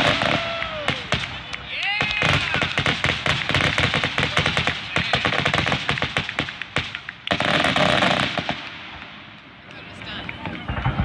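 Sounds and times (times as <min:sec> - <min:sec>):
fireworks whistles: 0:00.0 - 0:08.7
fireworks bangs and crackling: 0:00.0 - 0:11.0.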